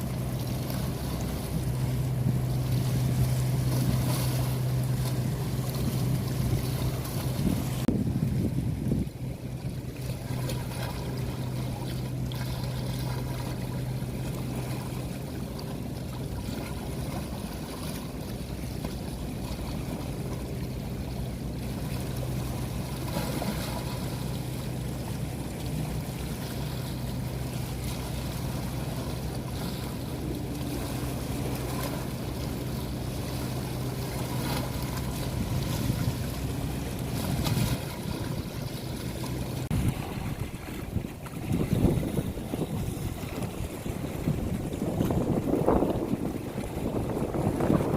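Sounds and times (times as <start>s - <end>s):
low hum: 0.0s - 47.9s
water rushing: 0.0s - 47.9s
wind noise: 6.2s - 9.3s, 39.7s - 47.9s.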